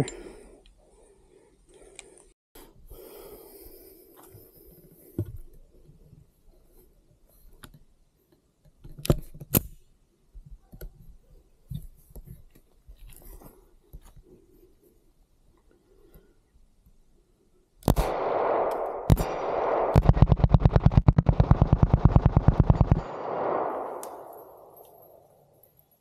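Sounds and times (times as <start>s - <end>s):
sharp loud cracks: 17.8s - 25.3s.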